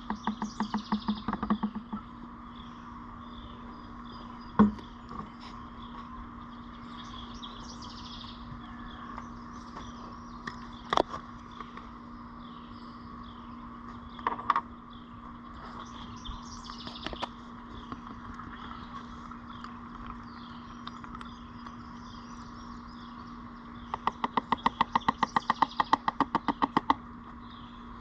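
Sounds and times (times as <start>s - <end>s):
low hum: 0.0s - 25.4s
birds chirping: 0.0s - 28.0s
single knocks: 4.6s - 5.3s.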